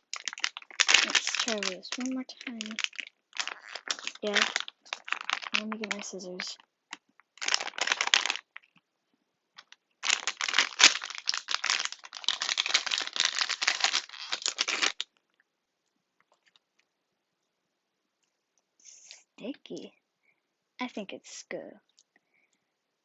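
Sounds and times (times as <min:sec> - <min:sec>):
plastic packaging crinkling: 0:00.0 - 0:08.8, 0:09.6 - 0:15.2.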